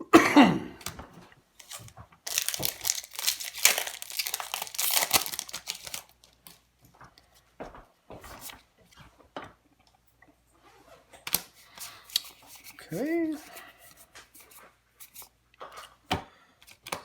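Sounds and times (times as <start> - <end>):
foil wrapper crinkling and tearing: 1.6 - 6.6.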